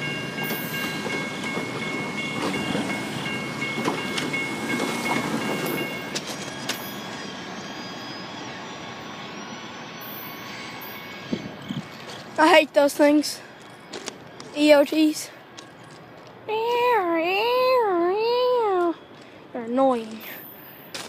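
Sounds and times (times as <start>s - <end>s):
train wheels clacking: 0.0s - 7.3s
high ringing tone: 0.0s - 15.9s, 16.5s - 21.0s
train rumble: 0.0s - 21.0s.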